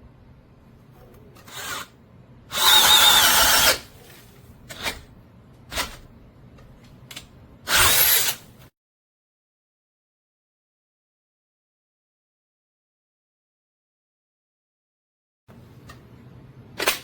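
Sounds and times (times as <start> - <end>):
power drill bursts: 2.5 - 3.9, 7.7 - 8.4.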